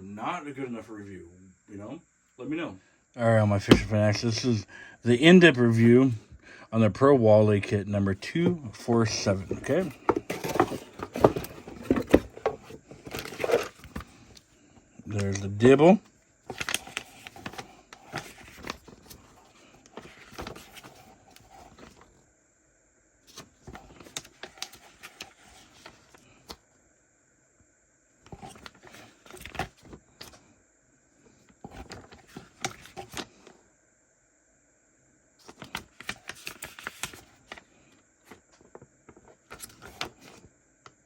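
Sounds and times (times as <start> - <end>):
plastic packaging rustling: 9.0 - 14.2, 16.5 - 22.1.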